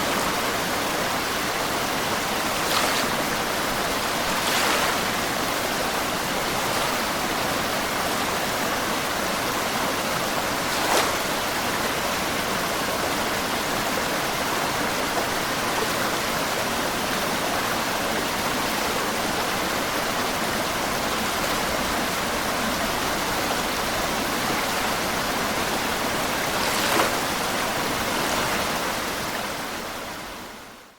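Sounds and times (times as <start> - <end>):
water splash: 2.5 - 3.3, 4.1 - 5.2, 26.4 - 29.0.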